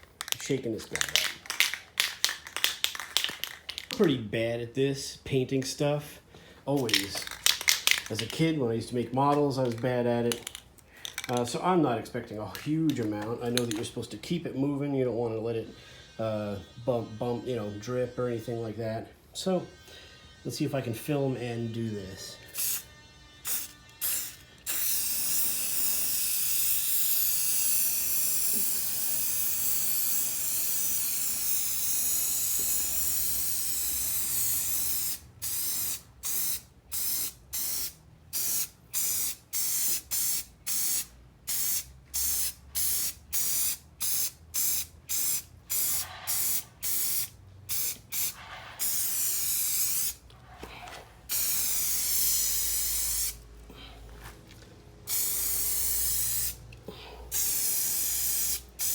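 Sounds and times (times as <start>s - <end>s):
spray paint can hissing: 0.2s - 4.0s, 6.8s - 8.4s, 22.5s - 50.2s, 51.3s - 53.4s, 55.0s - 56.6s, 57.3s - 58.9s.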